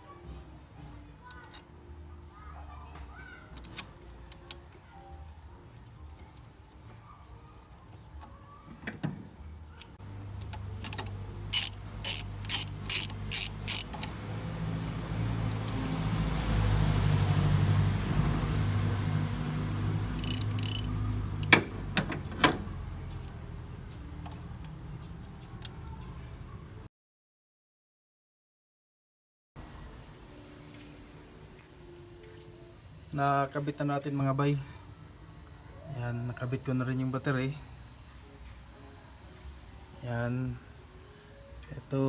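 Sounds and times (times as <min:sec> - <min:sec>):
ratchet wrench clicking: 0:01.3 - 0:01.7, 0:09.8 - 0:14.2, 0:15.4 - 0:15.8, 0:20.1 - 0:22.0.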